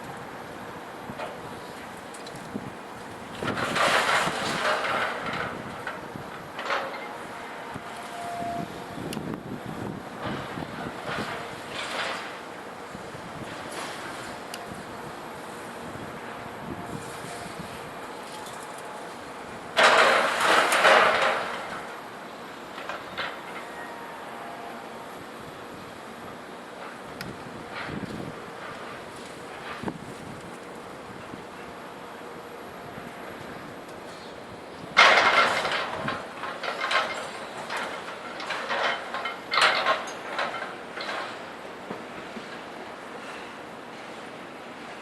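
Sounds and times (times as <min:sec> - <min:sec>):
scrap metal crashing: 0:03.4 - 0:05.6, 0:19.8 - 0:22.0
scrap metal crashing and clanging: 0:03.4 - 0:05.7, 0:19.7 - 0:22.0, 0:35.0 - 0:41.4.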